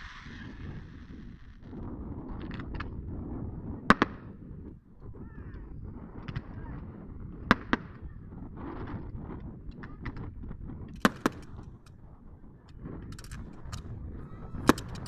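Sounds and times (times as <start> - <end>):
fireworks pops and crackles: 7.4 - 8.0, 10.9 - 11.8, 14.6 - 15.0.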